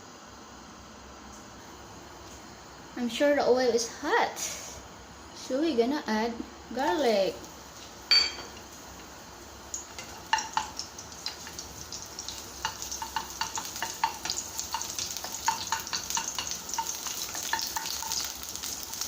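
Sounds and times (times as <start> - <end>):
garlic sizzling in hot oil: 6.7 - 19.0.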